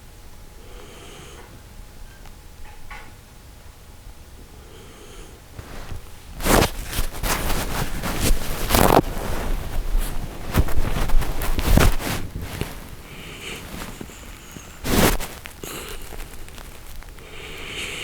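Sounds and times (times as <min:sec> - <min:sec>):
rustling and scuffing of movement: 0:05.6 - 0:17.3.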